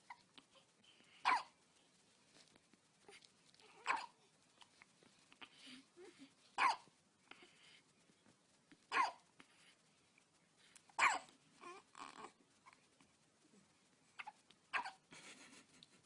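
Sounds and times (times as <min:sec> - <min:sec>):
newborn baby hiccuping: 0:01.2 - 0:01.6, 0:03.8 - 0:04.2, 0:06.6 - 0:06.9, 0:08.9 - 0:09.2, 0:11.0 - 0:11.3, 0:14.2 - 0:15.0.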